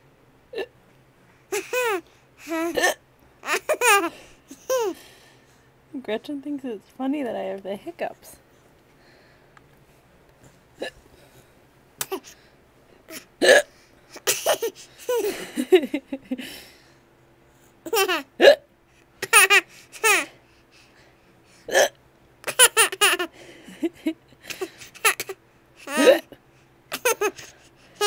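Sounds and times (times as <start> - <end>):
hiccups: 0.5 - 0.7, 2.6 - 3.0, 13.4 - 13.7, 18.4 - 18.7, 21.7 - 22.0, 25.9 - 26.3
laughter: 15.2 - 16.4, 23.7 - 24.2.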